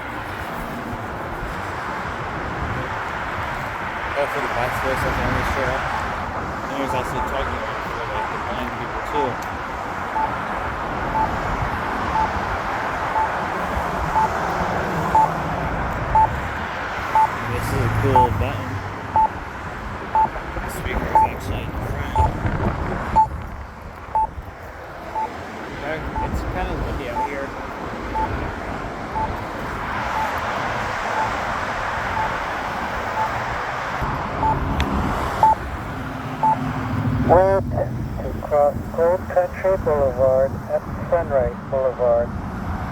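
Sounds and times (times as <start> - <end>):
wind noise on microphone: 0.0 - 8.4, 9.5 - 18.3, 18.9 - 25.2, 26.0 - 42.9
traffic noise: 0.0 - 42.9
short high beeps: 14.1 - 14.3, 15.1 - 15.3, 17.2 - 17.4, 18.2 - 18.4, 21.1 - 21.4, 26.2 - 26.4, 27.2 - 27.4, 34.4 - 34.6.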